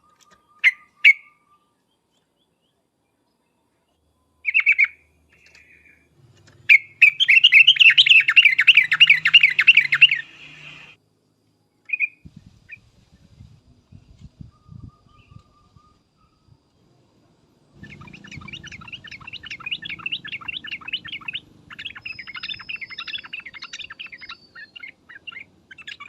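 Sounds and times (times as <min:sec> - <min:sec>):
bird warbling song: 0:04.4 - 0:11.0, 0:11.9 - 0:16.6, 0:17.7 - 0:26.0.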